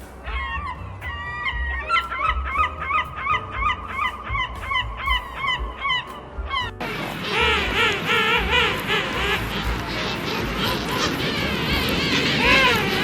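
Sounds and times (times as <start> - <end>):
birds calling: 0.0 - 13.0.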